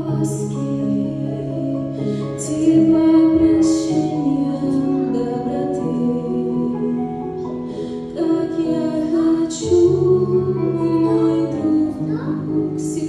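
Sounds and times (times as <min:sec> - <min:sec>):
woman singing long notes: 0:00.0 - 0:07.3
instrumental accompaniment: 0:00.0 - 0:13.0.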